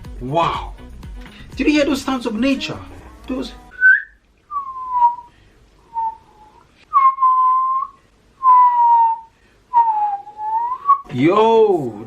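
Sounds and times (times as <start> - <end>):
person whistling long notes: 3.7 - 5.3, 5.9 - 11.1.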